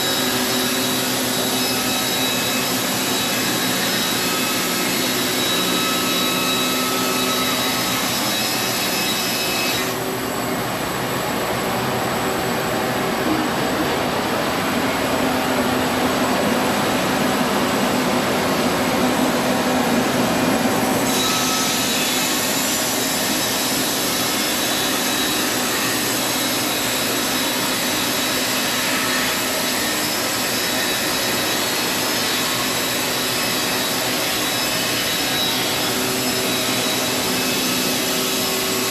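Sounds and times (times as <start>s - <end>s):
sawmill blade cutting wood: 0.0s - 10.1s, 18.8s - 38.9s.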